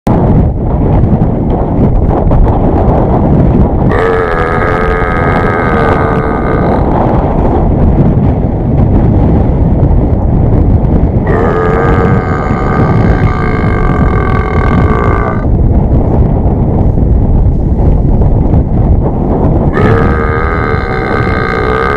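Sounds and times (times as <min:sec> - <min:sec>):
wind noise on microphone: 0:00.0 - 0:21.9
long drawn-out burps: 0:03.9 - 0:07.2, 0:11.2 - 0:15.5, 0:19.7 - 0:21.9.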